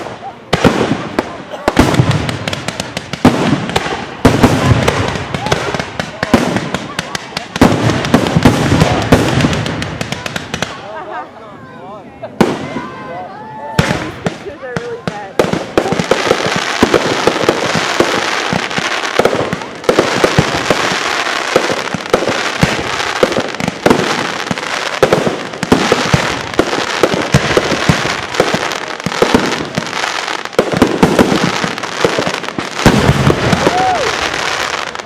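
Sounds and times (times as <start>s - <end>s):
fireworks bangs and pops: 0.0s - 11.1s, 12.3s - 35.0s
fireworks crackling hiss: 12.3s - 35.0s.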